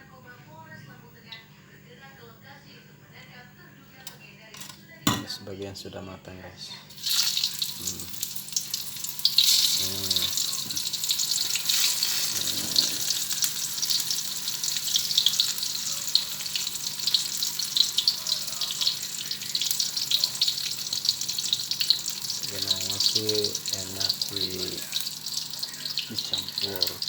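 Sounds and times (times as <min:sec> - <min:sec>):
food frying in hot oil: 0:06.9 - 0:27.0.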